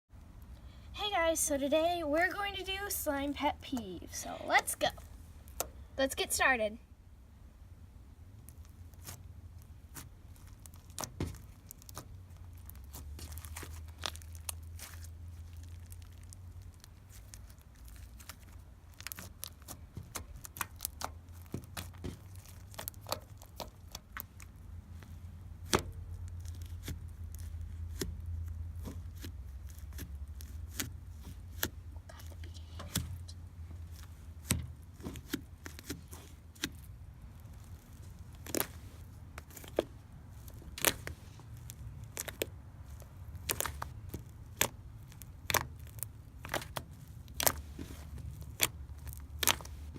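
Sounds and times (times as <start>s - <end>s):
low steady hum: 0.1s - 49.9s
slime clicking and popping: 9.9s - 24.6s, 33.9s - 49.9s.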